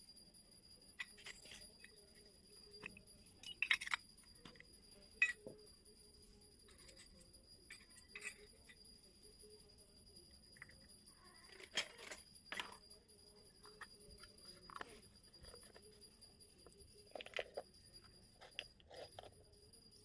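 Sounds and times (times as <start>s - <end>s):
toy pieces clicking and clinking: 1.0s - 5.5s, 10.6s - 12.9s, 13.5s - 19.5s.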